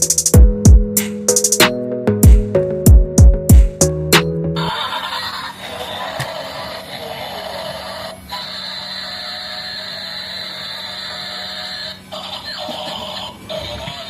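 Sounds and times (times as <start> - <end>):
high electronic toy tone: 7.4 - 14.0.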